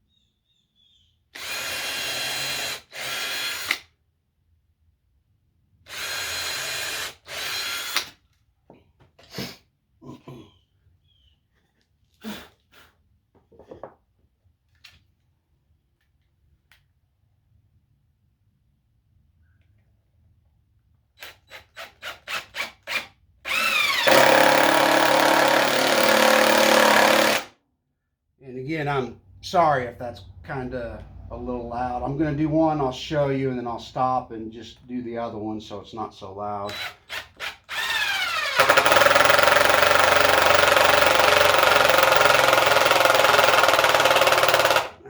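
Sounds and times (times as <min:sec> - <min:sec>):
cordless drill into wood: 0:01.3 - 0:03.9, 0:05.9 - 0:08.2, 0:21.2 - 0:27.5, 0:36.7 - 0:45.0
impact driver hammering rattle: 0:23.5 - 0:27.5, 0:37.8 - 0:45.0
impact driver motor whine: 0:23.5 - 0:27.5, 0:37.7 - 0:44.9.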